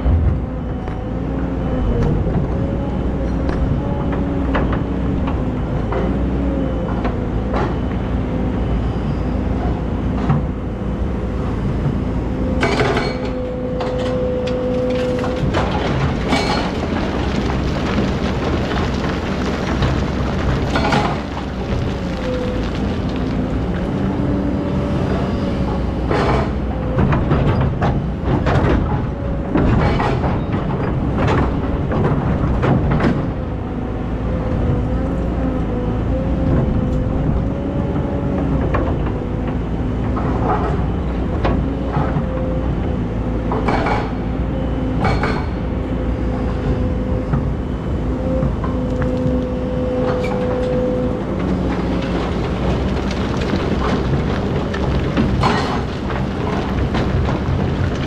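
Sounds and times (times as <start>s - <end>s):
diesel engine with whine: 0.0s - 58.0s.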